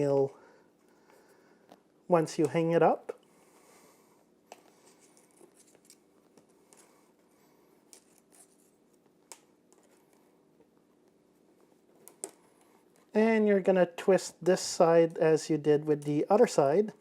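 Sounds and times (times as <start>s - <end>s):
wire ticking and scratching: 11.7s - 13.2s.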